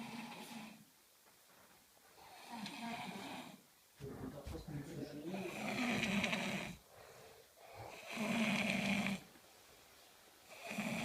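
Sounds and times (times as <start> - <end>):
man snoring: 0.0 - 0.8, 5.3 - 6.8, 7.6 - 9.3, 10.5 - 11.0
quiet breaths: 0.0 - 11.0.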